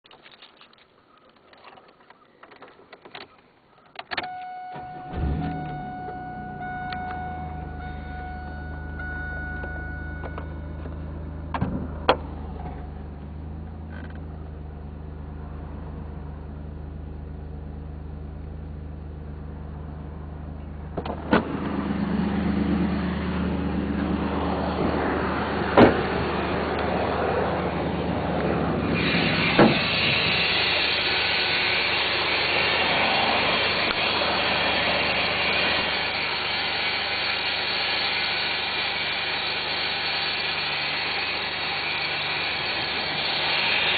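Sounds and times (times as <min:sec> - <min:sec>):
car engine starting and idling: 0:01.4 - 0:43.9
high steady tone: 0:04.2 - 0:11.5
steady hiss: 0:28.9 - 0:43.9.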